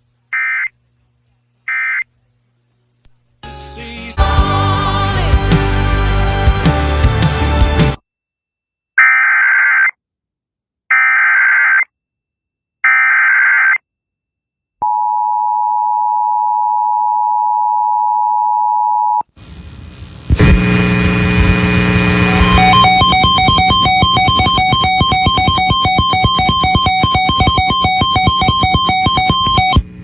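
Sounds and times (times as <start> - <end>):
loud music: 3.4 - 8.0, 22.4 - 29.2
two-tone attention signal: 22.2 - 29.8
warbling digital data tones: 22.2 - 29.8.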